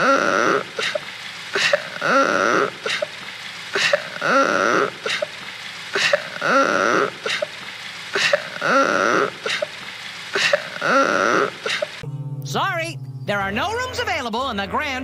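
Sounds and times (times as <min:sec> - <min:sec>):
cartoon crying wail: 0:00.0 - 0:00.8, 0:01.9 - 0:02.9, 0:04.2 - 0:05.0, 0:06.4 - 0:07.2, 0:08.6 - 0:09.4, 0:10.7 - 0:11.8.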